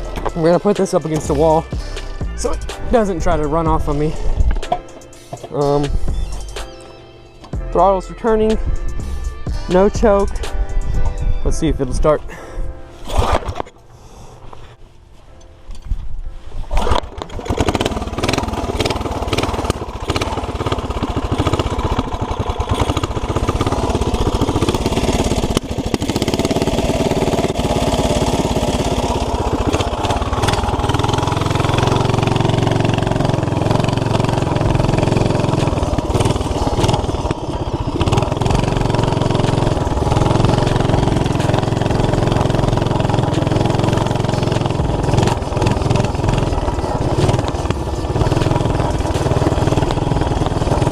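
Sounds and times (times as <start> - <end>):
small engine starting and running: 16.7 - 50.9.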